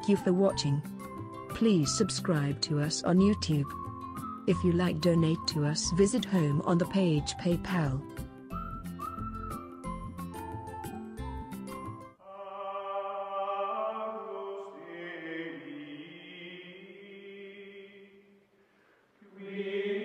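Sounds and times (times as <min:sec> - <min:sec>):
chant-like vocal drone: 0:12.2 - 0:18.3, 0:19.2 - 0:20.0.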